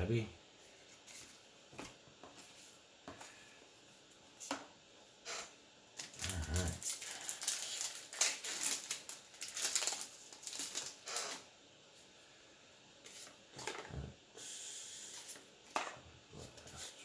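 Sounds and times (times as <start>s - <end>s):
cards and packaging rustling: 6.0s - 11.4s.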